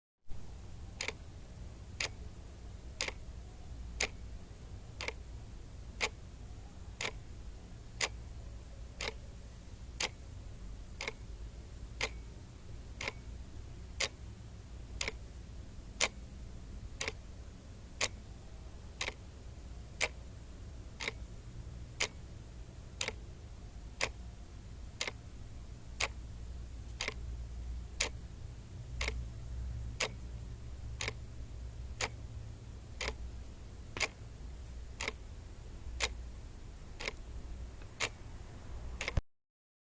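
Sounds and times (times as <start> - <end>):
low steady hum: 0.3 - 39.2
clock ticking: 0.9 - 1.2, 1.9 - 2.3, 3.0 - 3.2, 4.0 - 4.2, 4.9 - 5.3, 5.9 - 6.2, 7.0 - 7.2, 8.0 - 8.2, 9.0 - 9.3, 10.0 - 10.2, 10.9 - 11.3, 12.0 - 12.3, 12.9 - 13.3, 13.9 - 14.2, 14.9 - 15.2, 16.0 - 16.3, 16.9 - 17.3, 18.0 - 18.2, 19.0 - 19.3, 20.0 - 20.2, 21.0 - 21.3, 22.0 - 22.2, 22.9 - 23.2, 23.9 - 24.2, 25.0 - 25.2, 26.0 - 26.3, 27.0 - 27.3, 28.0 - 28.2, 28.9 - 29.3, 30.0 - 31.3, 31.9 - 32.3, 32.9 - 34.4, 35.0 - 35.3, 35.9 - 36.2, 37.0 - 38.2, 39.0 - 39.2.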